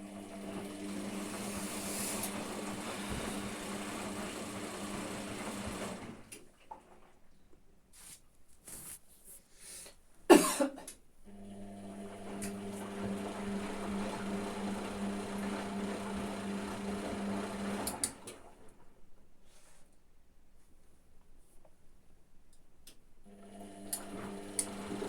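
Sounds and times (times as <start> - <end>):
washing machine motor humming: 0.0 - 7.0, 11.3 - 18.8, 23.3 - 25.0.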